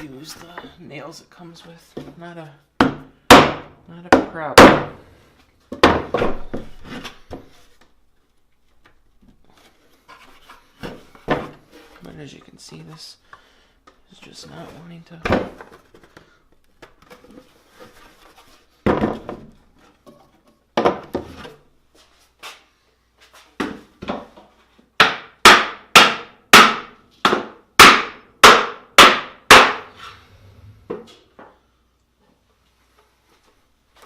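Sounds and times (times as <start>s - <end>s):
hammer driving nails into wood: 2.8s - 3.7s, 25.0s - 29.9s.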